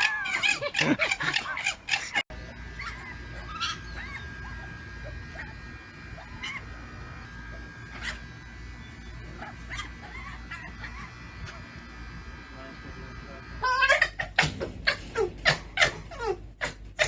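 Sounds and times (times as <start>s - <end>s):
fox screaming: 2.3s - 13.7s
low steady hum: 2.3s - 13.8s
fox whines and yips: 2.5s - 12.2s.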